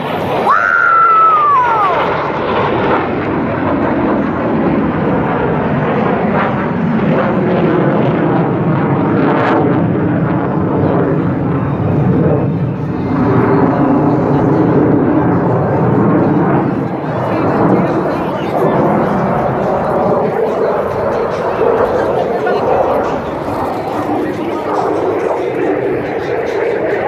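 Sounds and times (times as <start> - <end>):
aircraft flying past: 0.0 - 27.0.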